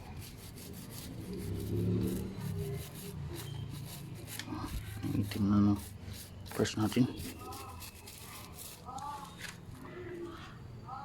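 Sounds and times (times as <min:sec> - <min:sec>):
vehicle engine passing: 0:00.0 - 0:07.8
stiff brush scrubbing chain: 0:00.0 - 0:09.4.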